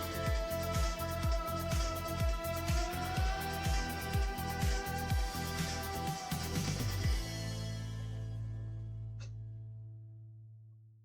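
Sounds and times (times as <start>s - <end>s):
deep kick drum beat: 0.0s - 8.3s
held low synth chord: 0.0s - 10.0s.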